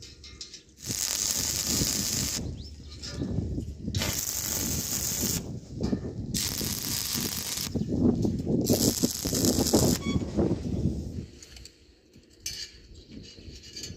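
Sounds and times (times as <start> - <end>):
welding arc crackling: 0.8 - 2.6, 4.0 - 5.5, 6.3 - 10.1.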